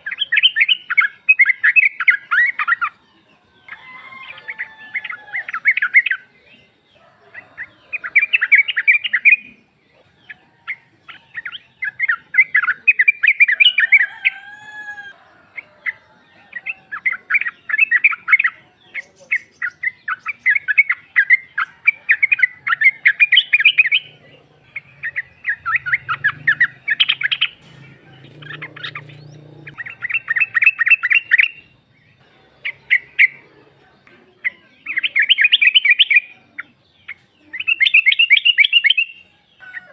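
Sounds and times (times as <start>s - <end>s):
bird bubbly chattering calls: 19.3s - 31.7s.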